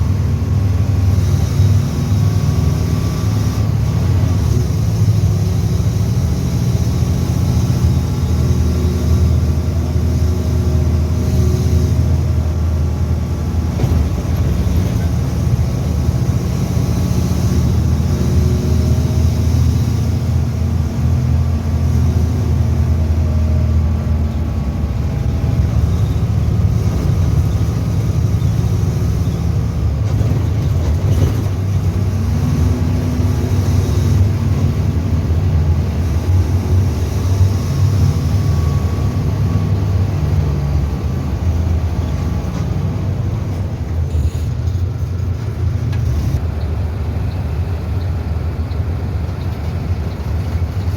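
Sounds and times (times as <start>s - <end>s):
bus diesel engine revving: 0.0s - 50.9s.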